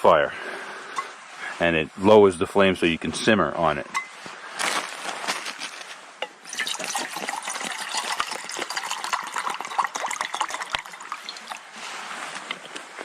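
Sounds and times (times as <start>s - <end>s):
liquid pouring into container: 6.4s - 11.8s.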